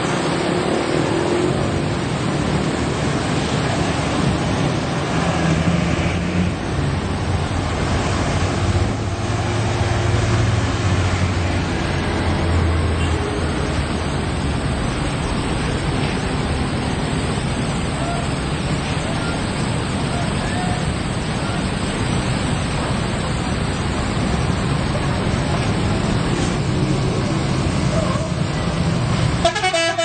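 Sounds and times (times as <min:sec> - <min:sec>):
road traffic rushing past: 0:00.0 - 0:30.0.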